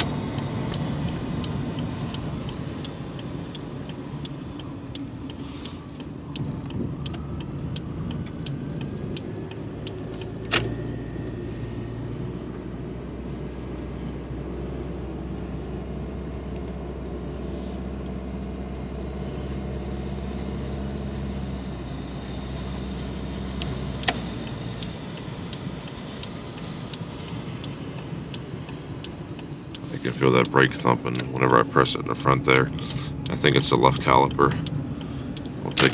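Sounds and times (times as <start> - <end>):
light ticking: 0.0 - 11.9, 22.2 - 35.9
car engine droning: 0.0 - 35.9
sharp clicks: 32.4 - 35.9.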